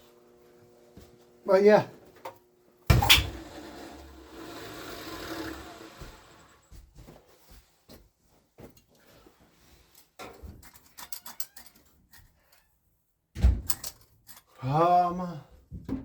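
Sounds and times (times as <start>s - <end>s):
parts clicking and rattling: 9.9s - 12.7s, 13.6s - 14.6s.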